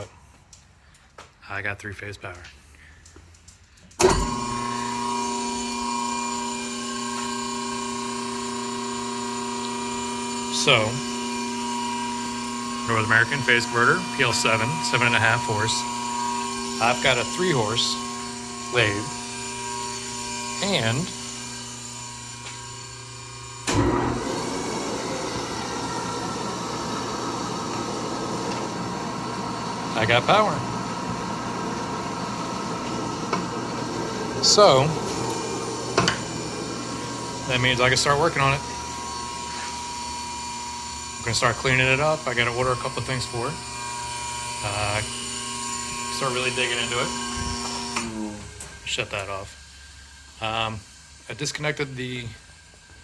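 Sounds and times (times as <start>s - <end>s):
phase converter starting thump: 4.0s - 8.6s, 9.6s - 39.8s, 45.6s - 49.0s
electric motor hum: 4.0s - 53.0s.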